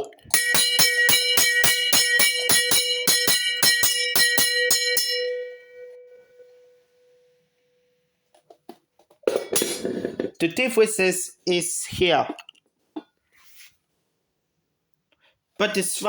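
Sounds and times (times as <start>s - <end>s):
bell rung rapidly: 0.3s - 5.9s.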